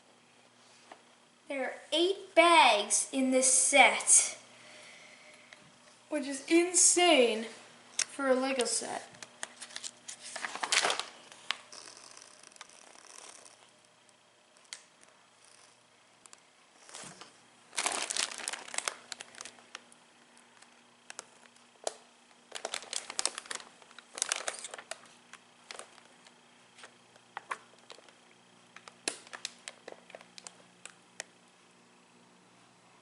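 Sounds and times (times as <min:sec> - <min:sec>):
plastic bags crinkling: 0:09.4 - 0:13.6, 0:16.9 - 0:19.8, 0:22.5 - 0:26.4, 0:28.8 - 0:30.6.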